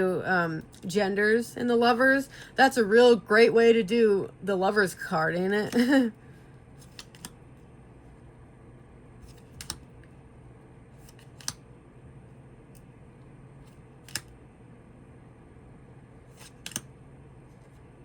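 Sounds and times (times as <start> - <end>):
faint room hum: 0.0 - 18.0
cards snapping: 6.8 - 7.4, 9.2 - 9.9, 11.0 - 11.6, 13.7 - 14.3, 16.3 - 16.9.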